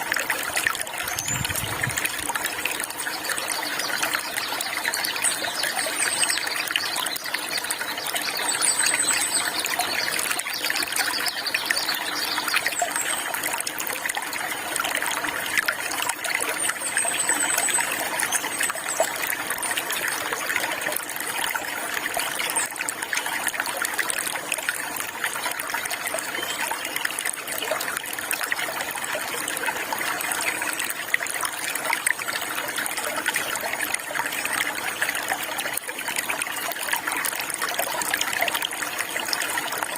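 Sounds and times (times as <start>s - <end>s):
running water trickling: 0.0s - 39.9s.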